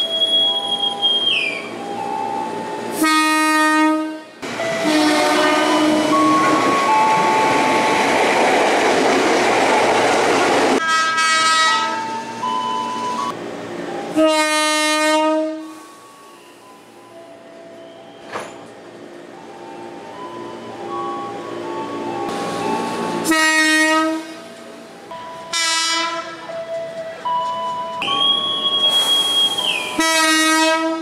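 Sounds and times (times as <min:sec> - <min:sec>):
train horn blasts: 0:02.9 - 0:06.9, 0:10.8 - 0:12.2, 0:14.1 - 0:15.8, 0:23.2 - 0:24.5, 0:25.4 - 0:26.5, 0:29.9 - 0:31.0
train rushing by: 0:04.2 - 0:11.0, 0:11.7 - 0:31.0.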